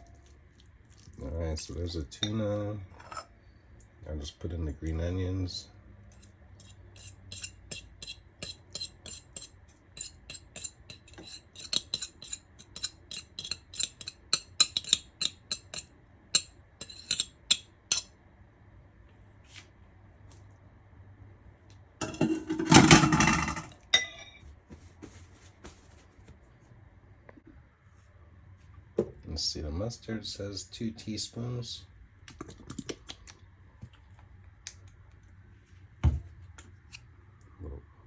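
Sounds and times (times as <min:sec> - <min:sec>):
utensils clinking against dishes: 0:06.1 - 0:18.1, 0:22.0 - 0:24.4.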